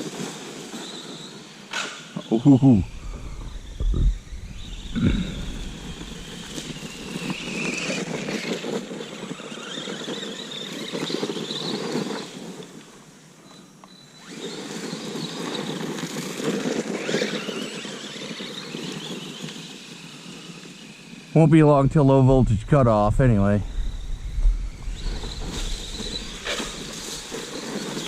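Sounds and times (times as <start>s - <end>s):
rc truck motor whining: 0.0s - 22.2s, 22.8s - 28.0s
rough rushing noise: 2.4s - 9.2s, 21.6s - 28.0s.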